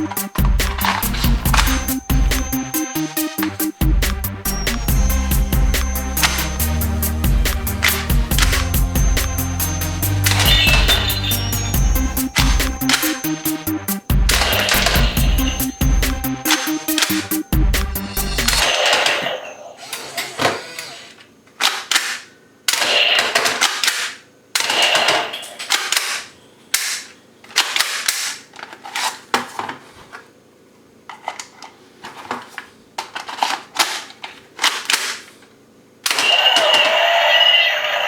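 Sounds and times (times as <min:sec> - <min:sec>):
toy guns firing: 0:06.2 - 0:06.8, 0:07.8 - 0:08.8, 0:10.2 - 0:13.6, 0:14.3 - 0:15.7, 0:16.4 - 0:17.6, 0:18.2 - 0:28.5, 0:36.0 - 0:38.0
toy gun clicks: 0:21.6 - 0:28.4, 0:36.1 - 0:37.7.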